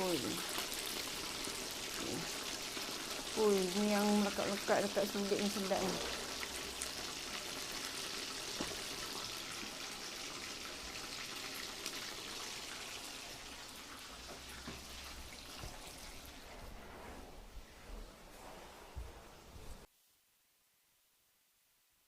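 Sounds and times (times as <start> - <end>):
chicken deep-frying in oil: 0.0 - 16.5.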